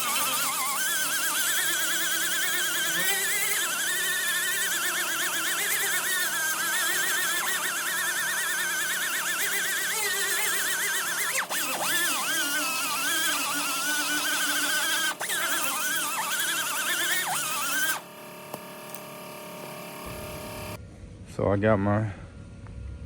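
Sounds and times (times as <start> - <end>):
angle grinder grinding metal: 0.0 - 20.8.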